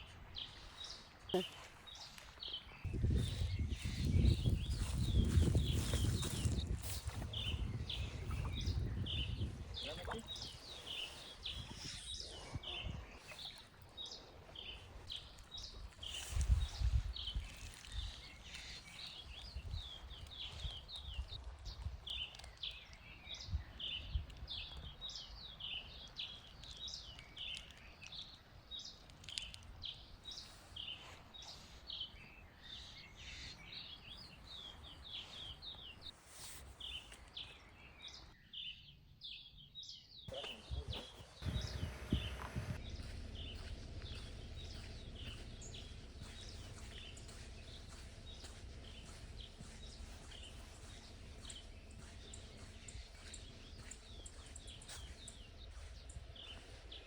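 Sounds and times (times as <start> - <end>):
small birds chirping: 0.0 - 57.0
low rumbling bumps: 2.9 - 10.6, 40.7 - 57.0.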